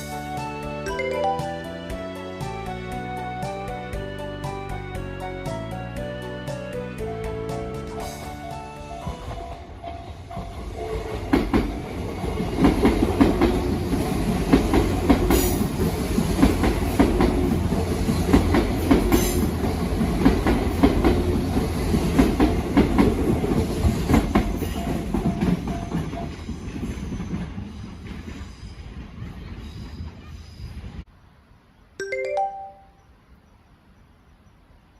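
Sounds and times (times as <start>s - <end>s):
train wheels clacking over rail joints: 9.1s - 29.9s.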